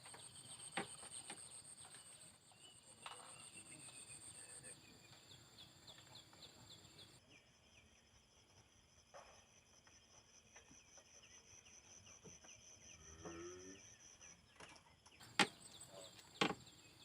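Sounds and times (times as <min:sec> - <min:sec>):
sharp knocks: 0:16.4 - 0:16.7.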